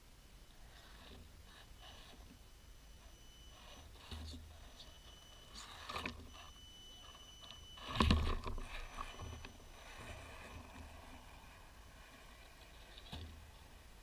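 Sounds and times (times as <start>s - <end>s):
high electric motor whine: 0.6s - 14.0s.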